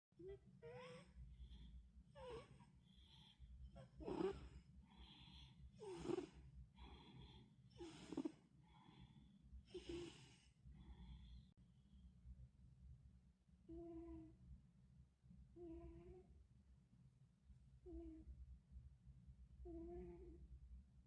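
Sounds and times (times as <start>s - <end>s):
cat snoring softly: 0.2s - 11.5s, 13.7s - 14.3s, 15.6s - 16.3s, 17.8s - 18.3s, 19.6s - 20.4s.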